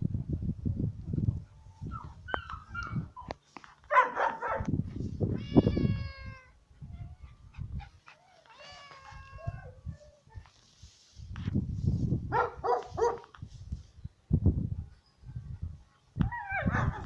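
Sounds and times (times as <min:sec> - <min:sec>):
cat meowing: 0:05.3 - 0:06.5, 0:08.5 - 0:09.7
rustling: 0:10.4 - 0:14.0.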